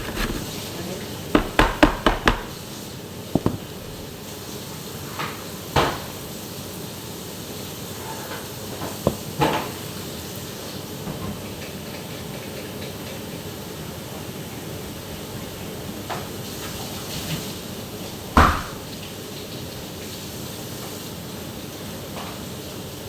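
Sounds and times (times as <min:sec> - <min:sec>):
kitchen knocks and clunks: 0:00.0 - 0:00.6, 0:01.3 - 0:02.7, 0:03.4 - 0:04.1, 0:09.1 - 0:09.7, 0:18.4 - 0:18.9.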